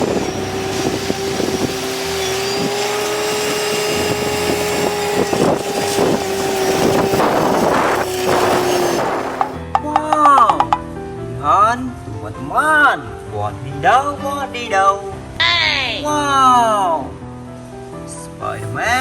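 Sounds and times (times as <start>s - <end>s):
hiss: 0.0s - 9.5s
small motor humming: 0.0s - 9.6s.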